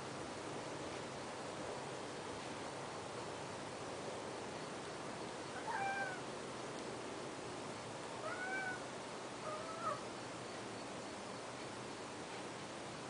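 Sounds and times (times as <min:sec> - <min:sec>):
steady hiss: 0:00.0 - 0:13.0
cat meowing: 0:05.6 - 0:06.2, 0:08.2 - 0:08.8, 0:09.4 - 0:10.0.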